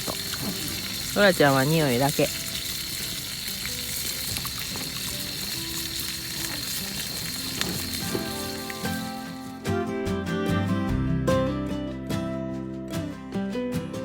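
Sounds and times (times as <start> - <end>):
food sizzling in a pan: 0.0 - 9.6.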